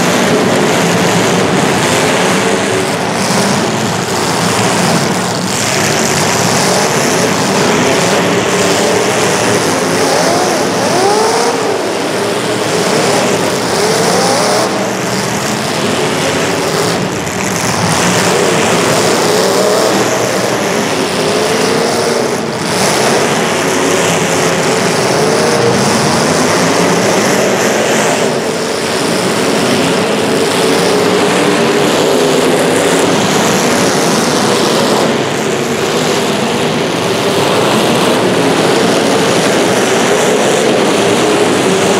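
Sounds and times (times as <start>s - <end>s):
racing engines revving: 0.0s - 41.9s.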